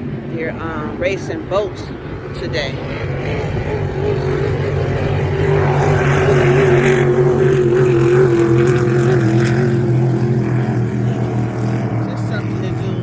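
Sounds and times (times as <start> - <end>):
motorboat engine droning: 0.0 - 13.0.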